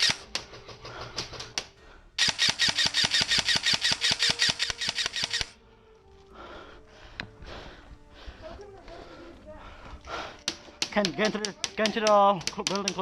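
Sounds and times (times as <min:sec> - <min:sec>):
airsoft rifle firing full auto: 0:00.0 - 0:00.2, 0:02.2 - 0:05.6.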